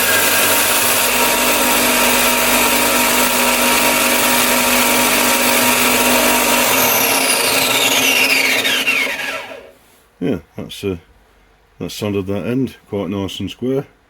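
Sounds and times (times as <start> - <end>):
bench sander sanding metal: 0.0 - 9.7.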